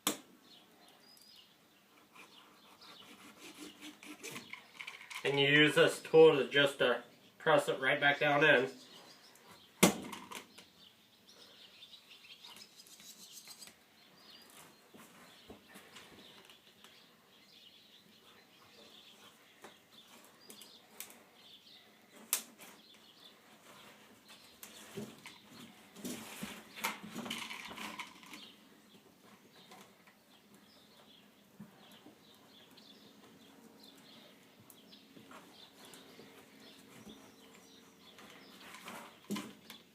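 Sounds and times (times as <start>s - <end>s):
screen rubbing and rustling: 3.0s - 5.4s, 12.6s - 13.8s, 23.6s - 28.6s.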